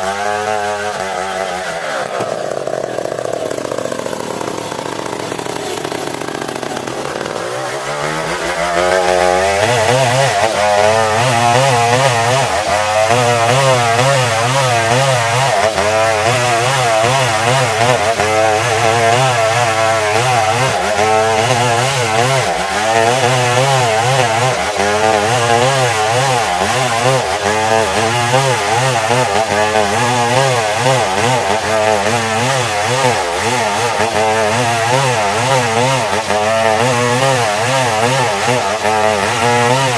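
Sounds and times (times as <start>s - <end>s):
chainsaw cutting log: 0.0s - 39.9s.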